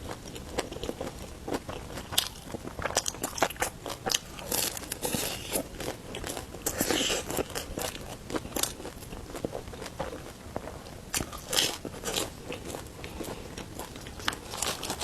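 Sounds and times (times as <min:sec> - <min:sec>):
biting and chewing flatbread: 0:00.0 - 0:15.0
crust crunching: 0:04.0 - 0:15.0.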